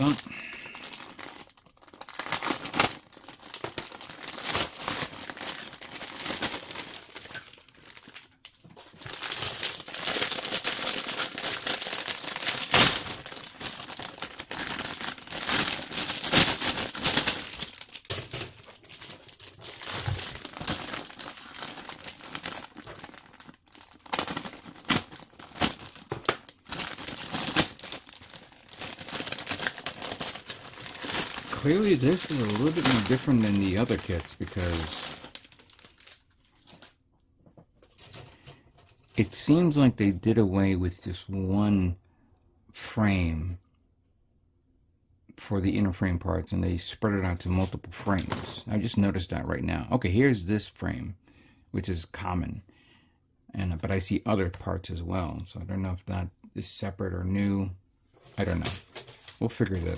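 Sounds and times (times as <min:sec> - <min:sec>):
plastic bags crinkling: 0:00.0 - 0:37.0, 0:37.9 - 0:39.2, 0:47.6 - 0:49.0, 0:58.2 - 0:59.9.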